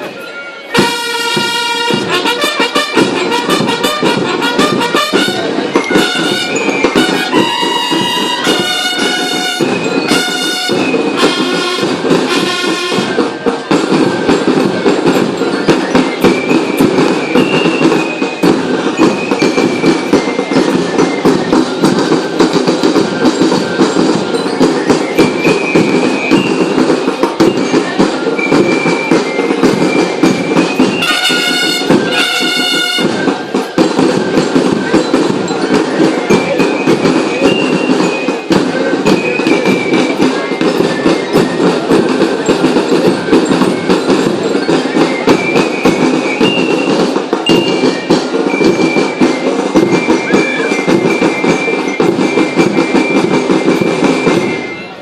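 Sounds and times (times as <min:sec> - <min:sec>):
loud brass music with driving beat: 0:00.7 - 0:13.4, 0:30.8 - 0:33.4.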